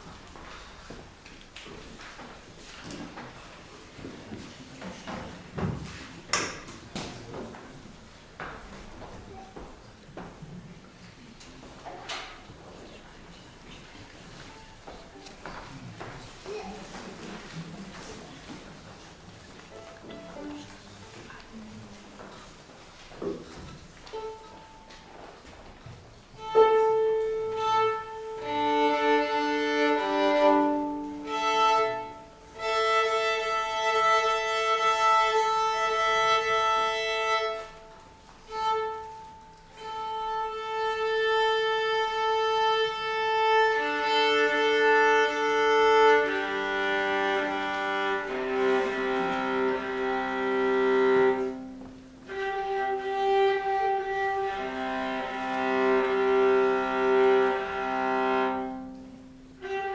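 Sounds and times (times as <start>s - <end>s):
piano quartet playing classical music: 26.4s - 59.9s.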